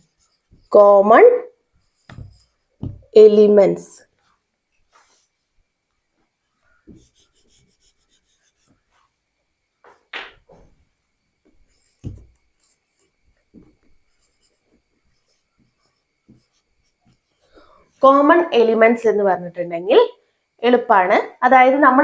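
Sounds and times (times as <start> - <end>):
faint rubbing and soft knocking: 0.0 - 0.8, 1.7 - 3.2, 4.0 - 18.1.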